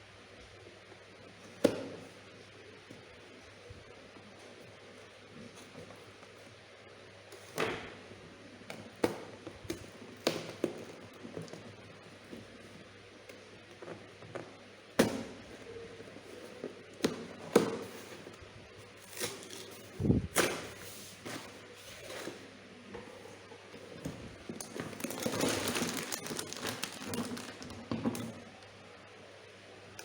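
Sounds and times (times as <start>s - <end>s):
plastic crinkling: 24.5s - 28.7s.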